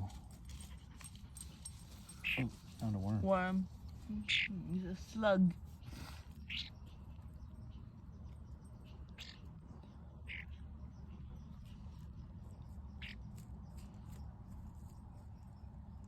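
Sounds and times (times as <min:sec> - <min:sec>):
faint bird chirps: 0:05.9 - 0:14.2.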